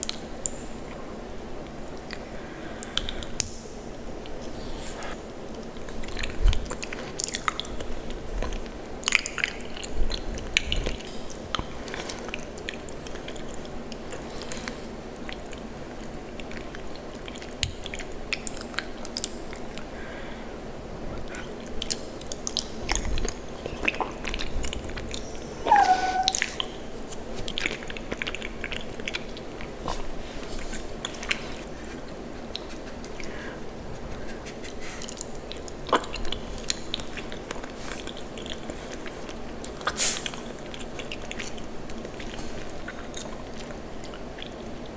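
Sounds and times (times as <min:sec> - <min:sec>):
steady low hiss: 0:00.0 - 0:44.9
wet chewing: 0:21.2 - 0:44.9
falling pitched sound: 0:25.6 - 0:26.6.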